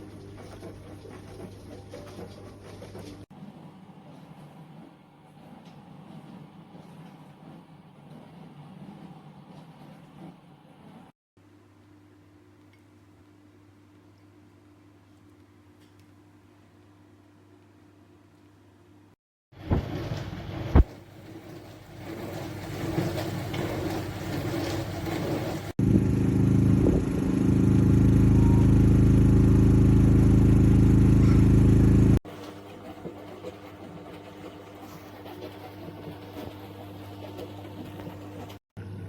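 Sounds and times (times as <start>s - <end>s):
dishwasher motor and pump humming: 0.0s - 11.1s, 19.5s - 39.0s
water washing inside dishwasher: 0.0s - 11.1s, 19.5s - 39.0s.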